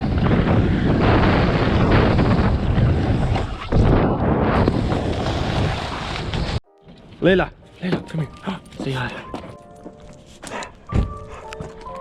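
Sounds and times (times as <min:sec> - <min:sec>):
wind buffeting microphone: 0:00.0 - 0:06.6.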